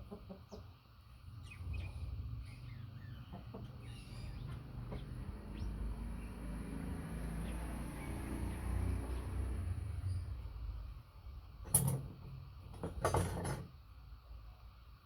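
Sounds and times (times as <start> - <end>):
birds chirping: 1.3 - 10.9.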